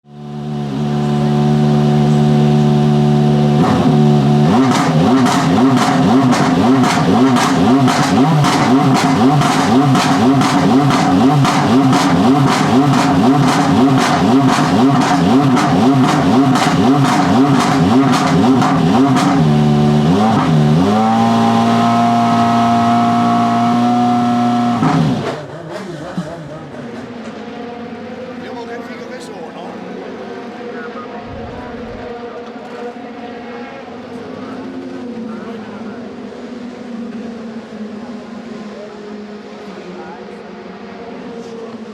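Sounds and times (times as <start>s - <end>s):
race car engine revving: 0.0s - 41.9s
exhaust cracks: 3.6s - 20.7s.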